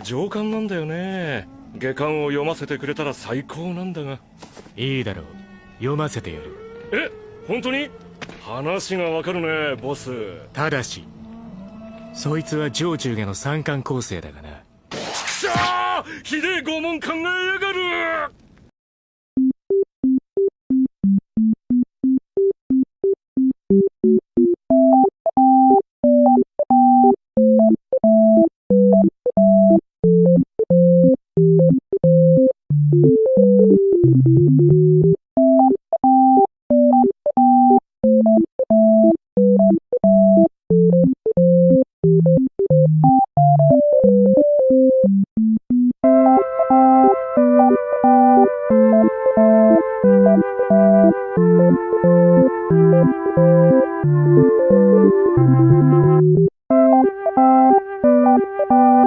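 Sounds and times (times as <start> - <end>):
bouncy synthesizer melody: 19.4 - 59.0.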